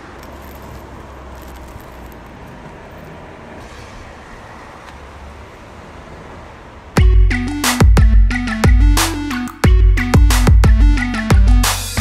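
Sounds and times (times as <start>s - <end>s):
car road noise rumble: 0.0s - 7.0s.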